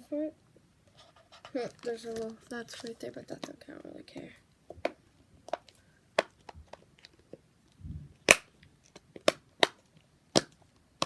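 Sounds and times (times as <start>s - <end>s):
plastic fidget toy popping: 4.8s - 6.8s, 8.2s - 10.6s.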